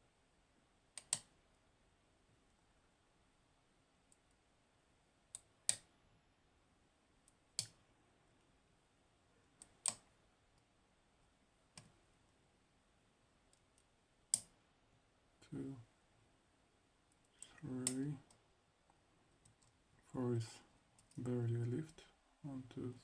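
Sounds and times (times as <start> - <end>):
lock pick metallic clicks: 1.0 - 1.3.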